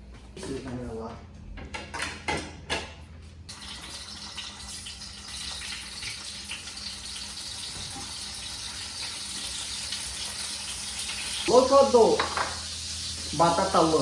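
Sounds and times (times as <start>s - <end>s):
food sizzling in hot oil: 3.5s - 14.0s.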